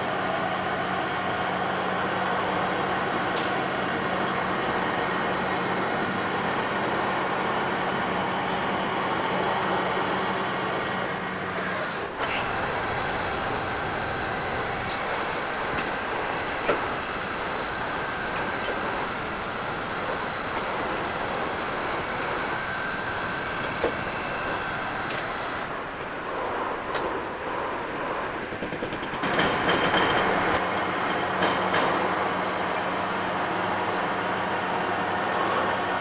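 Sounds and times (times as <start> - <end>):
metal lathe cutting: 9.9 - 32.3
coolant water flowing: 12.0 - 27.8.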